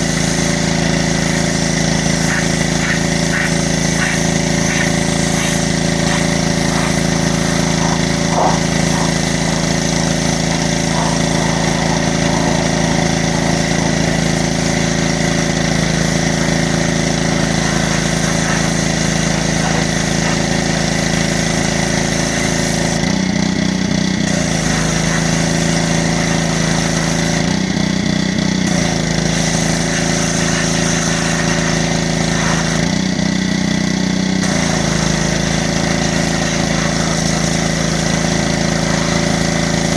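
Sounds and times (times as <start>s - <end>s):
hiss of water spray: 0.0s - 21.5s
pressure washer motor humming: 0.0s - 39.9s.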